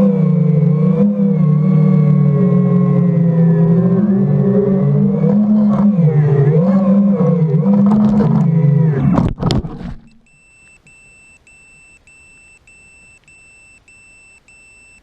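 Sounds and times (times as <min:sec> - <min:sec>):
quadcopter motors whining: 0:00.0 - 0:09.2.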